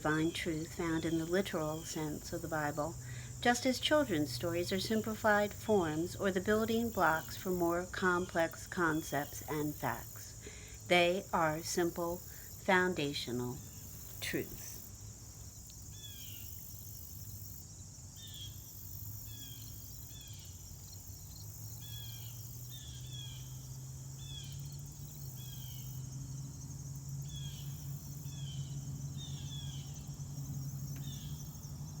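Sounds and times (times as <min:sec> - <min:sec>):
low steady hum: 0:00.0 - 0:15.6
high-pitched insect chorus: 0:00.0 - 0:32.0.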